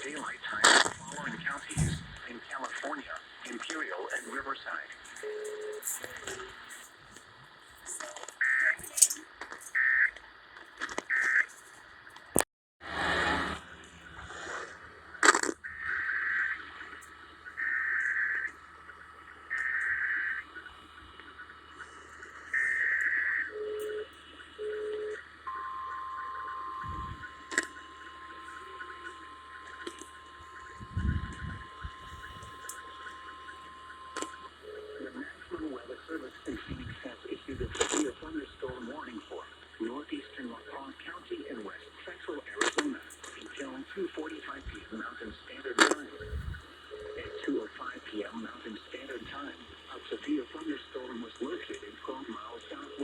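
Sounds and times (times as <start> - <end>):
buzzy digital data tones: 0.0 - 12.2, 13.0 - 42.4, 43.6 - 53.0
radio hiss: 0.0 - 53.0
buzzy data burst: 21.8 - 38.6
short low beeps: 23.5 - 35.2.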